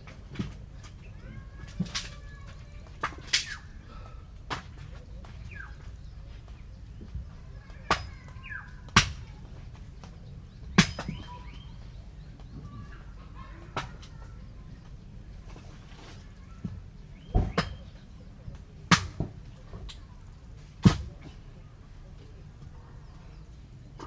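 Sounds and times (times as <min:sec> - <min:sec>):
birds chirping: 0:00.0 - 0:24.0
sharp knocks: 0:10.8 - 0:11.3, 0:18.9 - 0:19.4.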